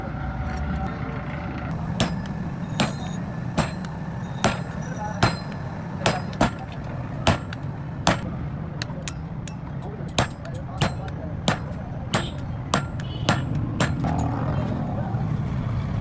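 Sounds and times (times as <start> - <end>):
hammer striking iron on anvil: 1.9 - 14.3.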